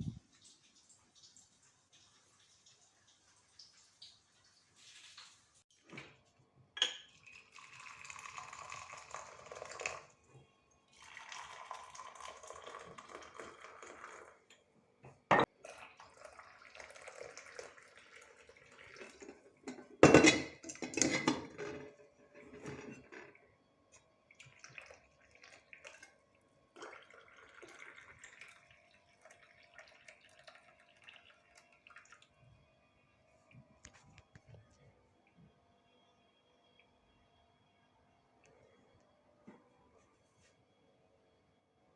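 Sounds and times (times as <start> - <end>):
tap water running: 0.0 - 6.2, 6.9 - 10.3, 10.9 - 14.5, 15.3 - 23.4, 24.3 - 32.4
dishes and cutlery clattering: 19.1 - 23.4.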